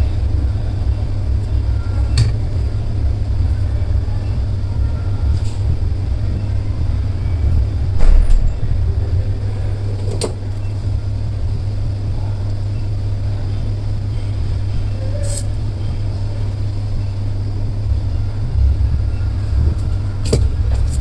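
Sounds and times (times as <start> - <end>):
steady low hum: 0.0 - 21.0
sharp click: 8.0 - 8.7
loud knock: 8.0 - 9.1.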